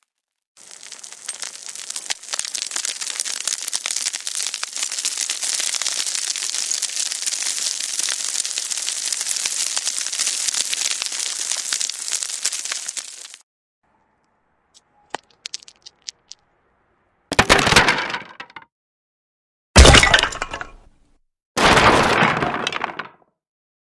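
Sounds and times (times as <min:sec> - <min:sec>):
small debris clattering down: 0:00.6 - 0:13.4, 0:14.7 - 0:16.4, 0:17.3 - 0:18.6, 0:19.8 - 0:20.9, 0:21.6 - 0:23.2.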